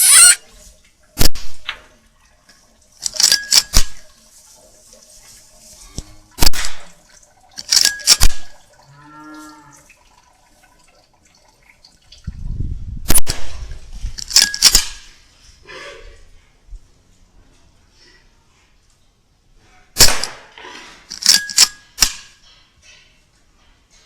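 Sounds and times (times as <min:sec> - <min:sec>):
air rifle shots cracking: 0:06.4 - 0:07.0, 0:13.1 - 0:13.6, 0:20.0 - 0:20.5.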